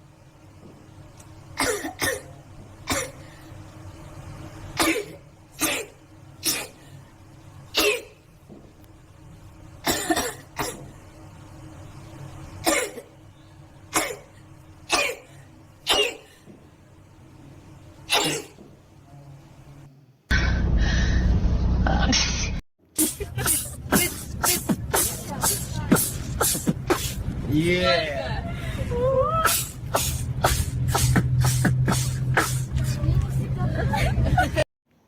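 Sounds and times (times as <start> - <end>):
girl sneezing: 23.0 - 27.2, 29.4 - 32.8.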